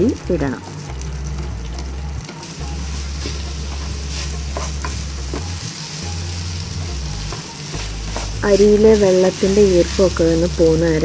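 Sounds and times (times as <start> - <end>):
rice sizzling in a pan: 0.0 - 11.0
spoon scraping and tapping pan: 3.2 - 5.6, 6.8 - 8.4.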